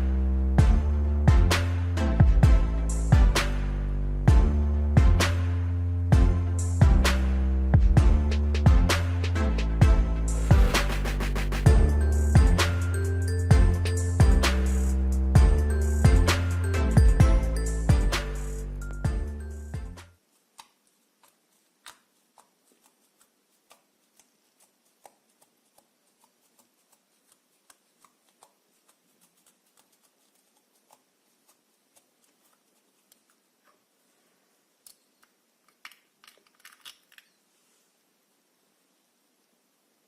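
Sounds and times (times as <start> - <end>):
music track: 0.0 - 20.2.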